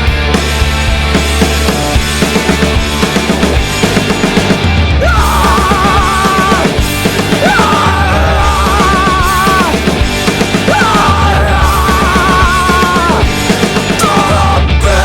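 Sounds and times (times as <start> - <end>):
loud rock music: 0.0 - 15.0.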